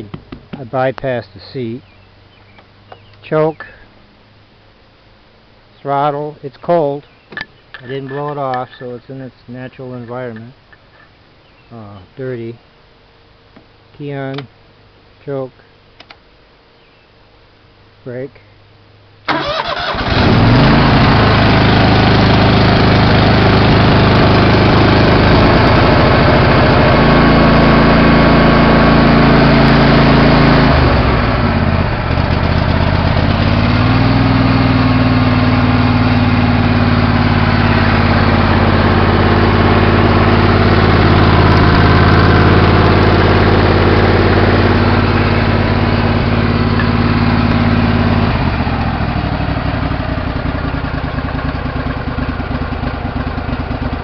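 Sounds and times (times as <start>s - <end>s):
lawn tractor engine running: 19.3s - 54.0s.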